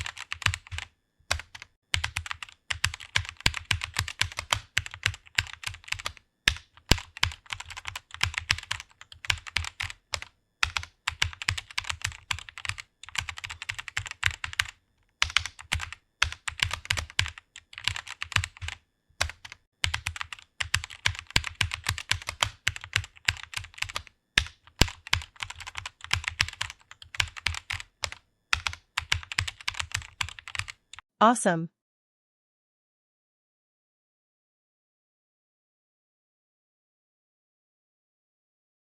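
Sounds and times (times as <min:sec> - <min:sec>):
fast typing on keyboard: 0:00.0 - 0:31.1.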